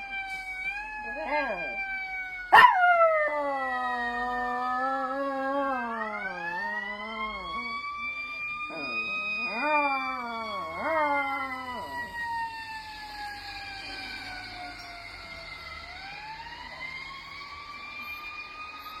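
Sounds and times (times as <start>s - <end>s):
fire truck siren wailing: 0.0s - 19.0s
dog howling: 1.1s - 1.8s, 2.5s - 7.8s, 8.7s - 12.1s.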